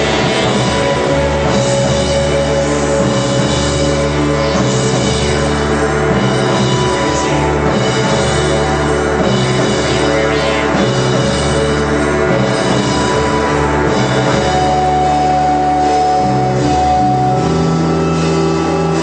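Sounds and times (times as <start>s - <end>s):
rock band playing loud: 0.0s - 19.0s.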